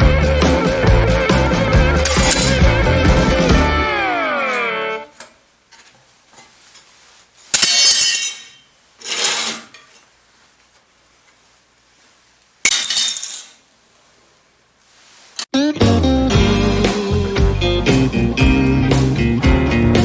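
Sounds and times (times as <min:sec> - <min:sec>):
steel parts clanking: 0:02.1 - 0:02.7.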